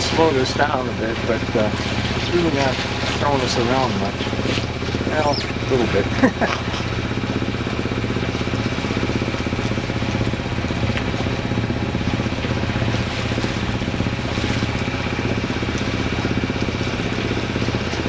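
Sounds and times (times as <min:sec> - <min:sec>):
choppy water: 0:02.8 - 0:18.0
boat engine droning: 0:03.2 - 0:17.5.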